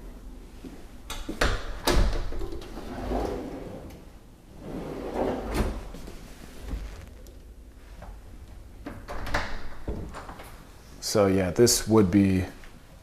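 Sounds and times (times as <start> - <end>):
cabinet drawers sliding and rumbling: 1.9 - 7.1.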